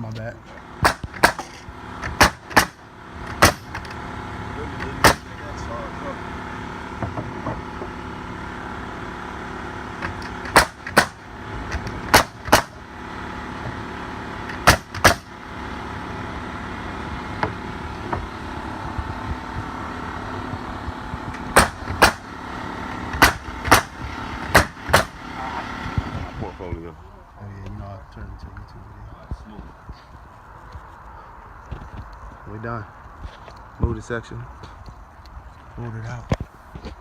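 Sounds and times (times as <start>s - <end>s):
steady mechanical hum: 0.0s - 37.0s
nail gun shots: 0.8s - 3.8s, 5.0s - 5.3s, 10.0s - 12.8s, 14.5s - 15.3s, 21.4s - 22.3s, 23.1s - 25.2s.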